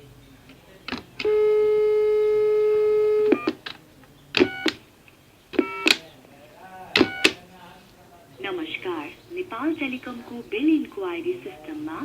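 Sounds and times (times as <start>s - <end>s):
telephone click: 0.5s - 6.1s, 7.0s - 7.4s
keypad beeps: 1.2s - 3.6s, 4.4s - 4.8s, 5.5s - 6.0s, 7.0s - 7.4s.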